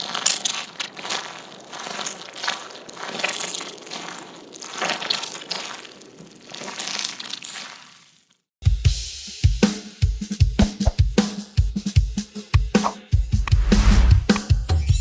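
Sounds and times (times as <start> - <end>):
footsteps walking through mud: 0.0 - 8.3.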